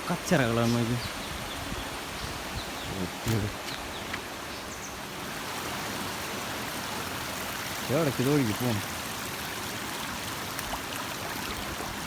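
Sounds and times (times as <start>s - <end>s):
man's voice: 0.0s - 1.1s, 2.9s - 3.6s
waterfall rushing: 2.8s - 12.0s.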